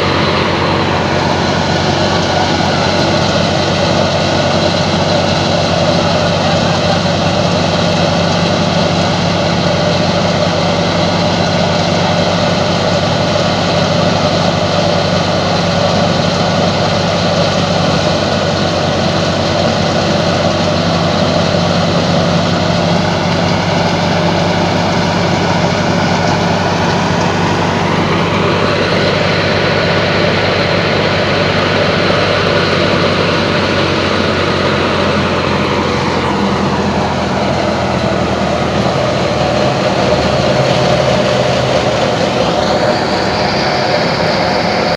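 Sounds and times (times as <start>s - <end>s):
thresher mechanical drone: 0.0s - 44.9s
tractor diesel engine running: 0.0s - 44.9s
whining tones rising: 0.0s - 44.9s.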